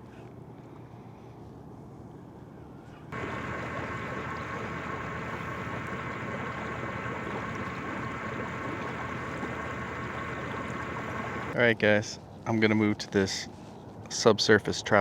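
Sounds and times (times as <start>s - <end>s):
boat motor humming: 3.1s - 11.6s.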